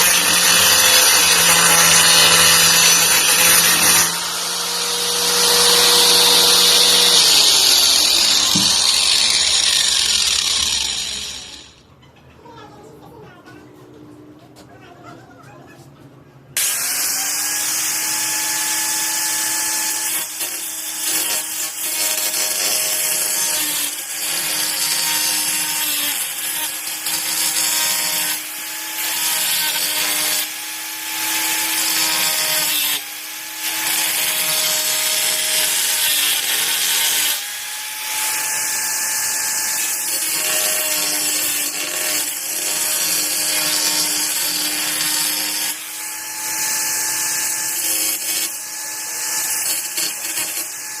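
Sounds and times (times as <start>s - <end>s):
angle grinder whining: 0.0s - 11.8s, 16.6s - 51.0s
grinding disc hissing: 5.8s - 11.7s.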